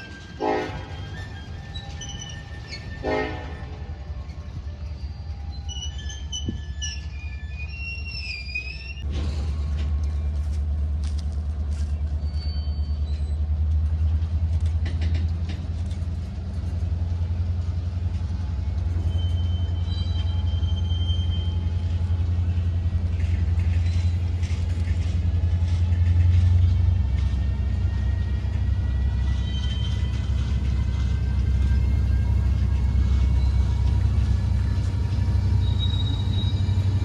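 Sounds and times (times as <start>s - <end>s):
high-pitched squeals: 0.0s - 9.0s, 28.0s - 37.0s
locomotive engine rumbling: 0.0s - 37.0s.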